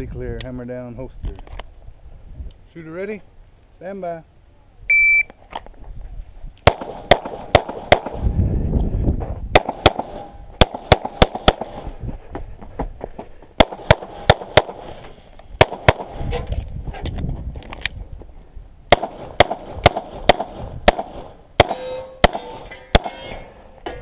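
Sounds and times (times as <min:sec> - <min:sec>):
pistol shots: 0:06.6 - 0:08.2, 0:09.5 - 0:11.9, 0:13.6 - 0:14.9, 0:15.6 - 0:16.2, 0:18.9 - 0:23.2.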